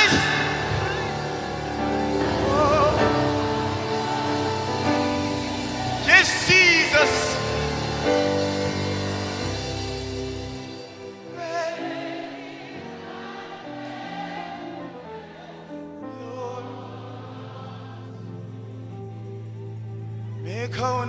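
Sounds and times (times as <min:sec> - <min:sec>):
slow instrumental worship music: 0:00.0 - 0:21.0.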